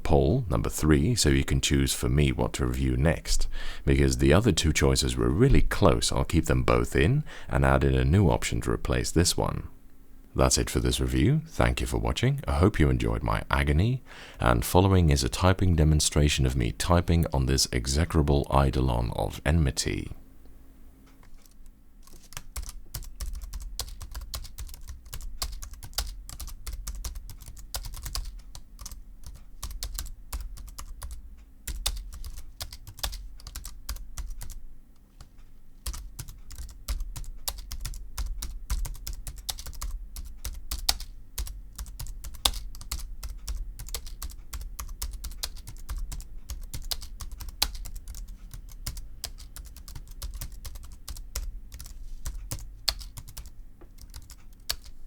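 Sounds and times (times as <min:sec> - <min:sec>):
fast keyboard typing: 0:21.4 - 0:34.6, 0:35.8 - 0:55.0.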